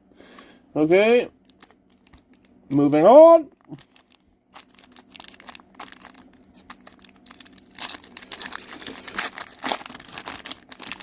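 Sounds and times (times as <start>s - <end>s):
foil wrapper crinkling: 0.9s - 11.0s.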